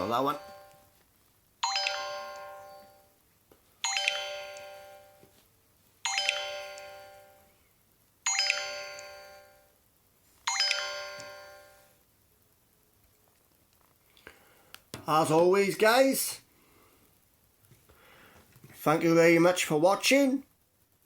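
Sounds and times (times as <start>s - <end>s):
mobile phone chime ringtone: 0.0s - 0.9s, 1.6s - 3.1s, 3.8s - 5.3s, 6.0s - 7.5s, 8.3s - 9.7s, 10.5s - 11.9s.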